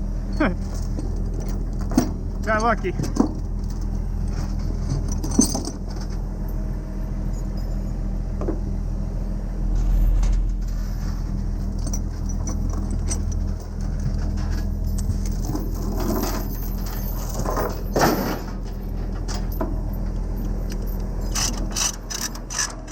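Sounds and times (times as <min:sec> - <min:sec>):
large engine idling: 0:00.0 - 0:22.9
metallic clinks and jingles: 0:05.1 - 0:05.8, 0:11.6 - 0:18.0.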